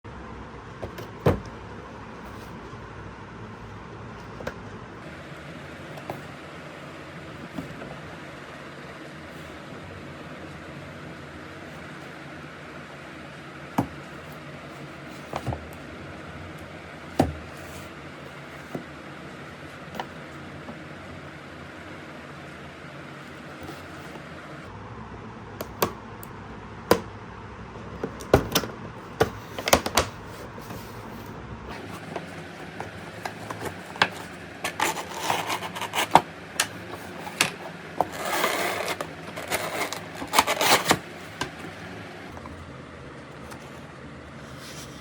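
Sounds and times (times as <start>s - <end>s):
packaging rustling: 31.8s - 41.7s.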